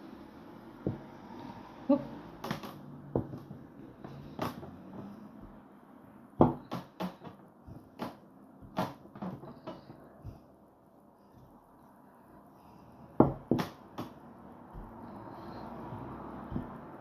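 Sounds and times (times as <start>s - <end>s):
rolling pin knocking on worktop: 2.4s - 5.1s, 6.4s - 10.4s, 13.2s - 14.1s.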